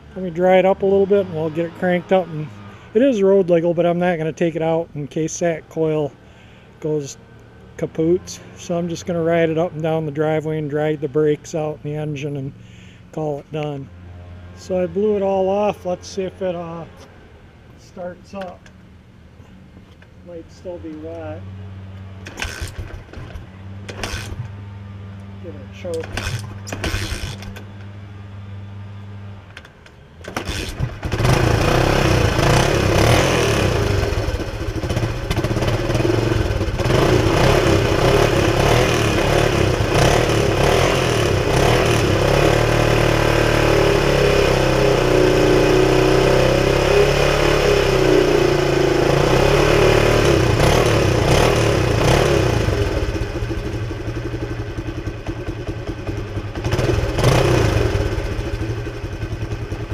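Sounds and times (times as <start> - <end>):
motorcycle engine starting and revving: 0.0 - 59.9.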